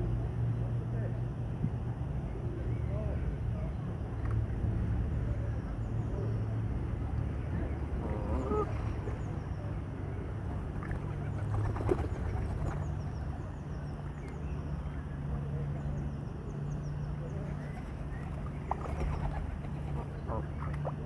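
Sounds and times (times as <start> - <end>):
geese honking: 20.0 - 21.0.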